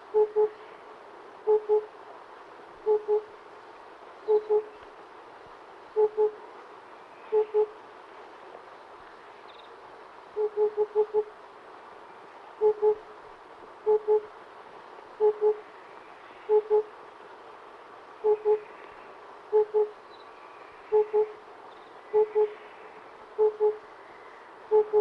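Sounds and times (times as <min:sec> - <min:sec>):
cuckoo hooting: 0:00.1 - 0:00.6, 0:01.5 - 0:01.9, 0:02.9 - 0:03.3, 0:04.3 - 0:04.8, 0:06.0 - 0:06.4, 0:07.3 - 0:07.8, 0:10.4 - 0:11.3, 0:12.6 - 0:13.0, 0:13.9 - 0:14.3, 0:15.2 - 0:15.6, 0:16.5 - 0:16.9, 0:18.2 - 0:18.7, 0:19.5 - 0:20.0, 0:20.9 - 0:21.4, 0:22.1 - 0:22.6, 0:23.4 - 0:23.8, 0:24.7 - 0:25.0.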